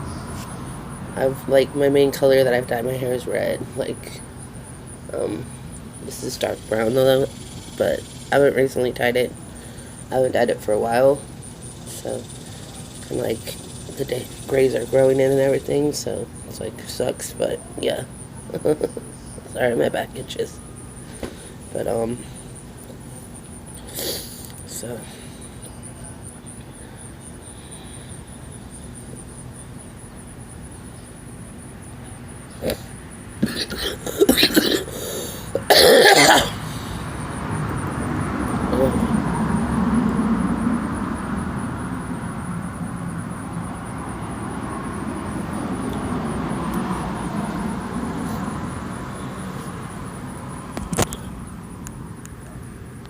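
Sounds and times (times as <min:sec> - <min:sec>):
high pulsing chirp: 0:00.0 - 0:23.9
low background hum: 0:00.0 - 0:53.0.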